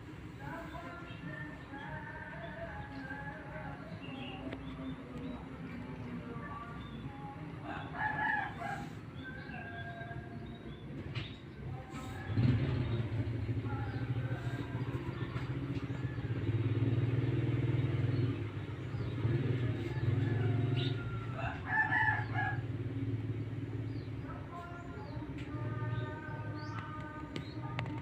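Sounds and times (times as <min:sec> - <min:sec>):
low engine hum: 0:00.0 - 0:28.0
small birds chirping: 0:00.1 - 0:28.0
rooster crowing: 0:07.6 - 0:10.3, 0:19.4 - 0:22.8.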